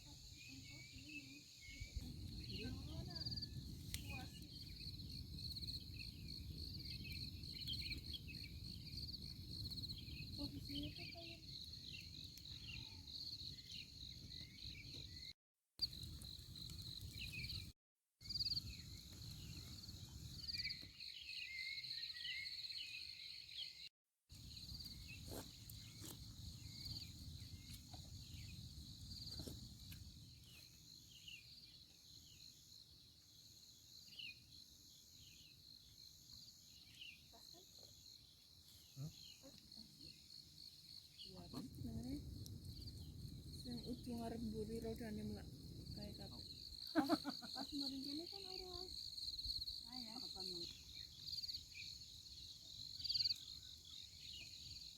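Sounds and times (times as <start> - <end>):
crickets and insects chirping: 0.0 - 54.9.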